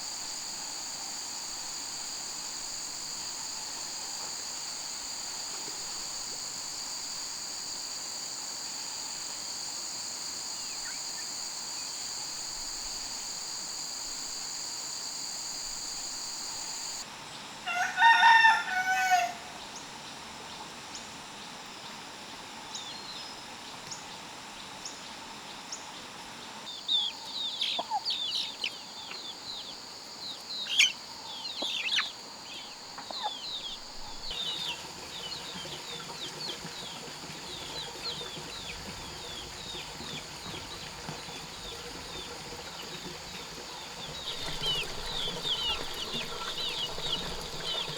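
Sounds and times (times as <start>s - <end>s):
insects droning: 0.0s - 47.9s
rooster crowing: 17.6s - 19.6s.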